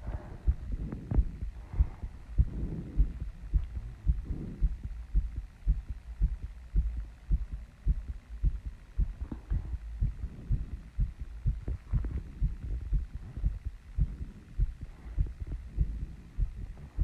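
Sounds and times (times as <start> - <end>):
heavy breathing: 0.0 - 5.4, 9.2 - 11.0, 11.9 - 17.0
fast heartbeat thumping: 0.0 - 17.0.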